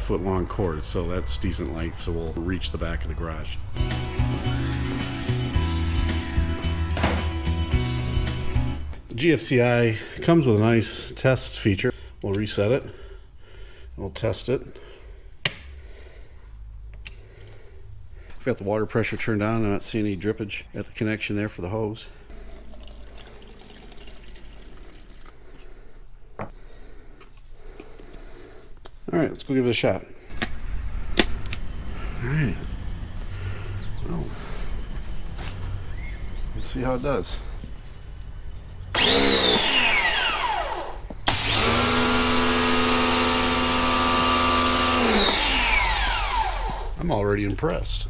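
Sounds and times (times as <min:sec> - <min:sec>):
water trickling: 0:22.3 - 0:25.4
pressure washer motor: 0:30.3 - 0:37.8, 0:38.9 - 0:47.0
loud spray hiss: 0:41.2 - 0:46.6.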